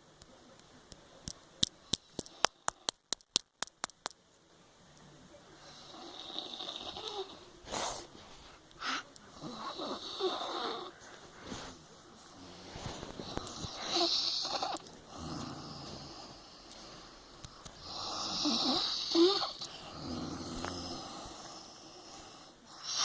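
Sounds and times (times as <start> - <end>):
woman snoring: 5.6 - 7.8, 9.4 - 10.9, 13.2 - 17.2, 17.8 - 23.0.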